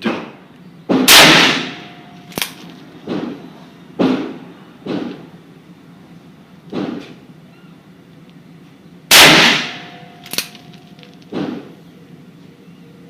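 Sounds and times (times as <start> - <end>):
distant gunshots with echo: 0.9 - 2.0, 9.1 - 10.1
sharp click: 10.2 - 11.2.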